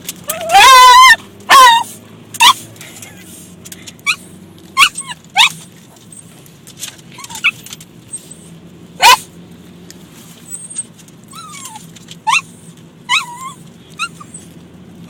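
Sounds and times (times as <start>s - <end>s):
car hum: 0.0s - 15.0s
dog barking and yelping: 0.2s - 3.3s, 4.0s - 6.4s, 7.1s - 9.4s, 10.5s - 14.6s.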